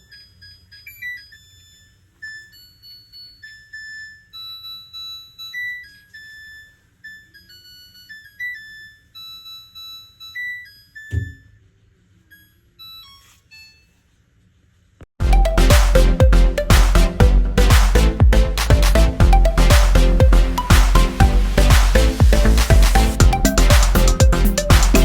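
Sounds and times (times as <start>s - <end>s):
thump: 11.1s - 11.6s
washing machine beeping melody: 15.2s - 25.0s.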